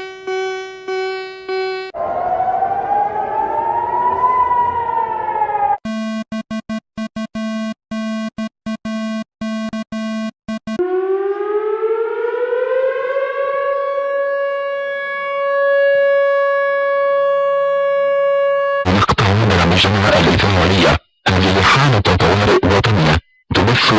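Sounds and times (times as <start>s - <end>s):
buzzy alarm tone stuttering: 0.0s - 4.2s
siren wailing: 0.1s - 5.8s, 10.8s - 18.9s.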